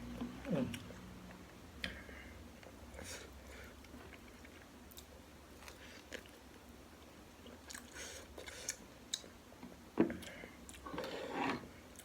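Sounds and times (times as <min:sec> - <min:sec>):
person chewing with mouth smacks: 0:07.4 - 0:09.3.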